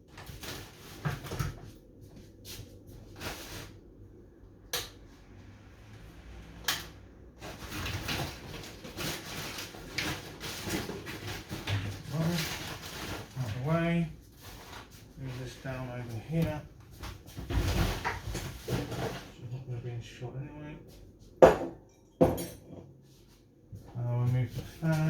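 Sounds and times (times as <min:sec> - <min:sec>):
rustling and shuffling: 0:00.0 - 0:04.2, 0:07.3 - 0:19.7, 0:22.9 - 0:25.0.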